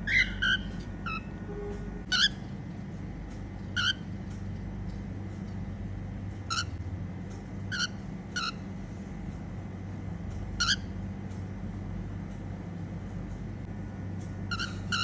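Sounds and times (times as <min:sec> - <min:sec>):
cockatiel chirping: 0:00.0 - 0:01.3, 0:02.1 - 0:02.4, 0:03.8 - 0:04.0, 0:06.5 - 0:06.7, 0:07.7 - 0:08.6, 0:10.6 - 0:10.9, 0:14.5 - 0:15.0
steady low hum: 0:00.0 - 0:15.0.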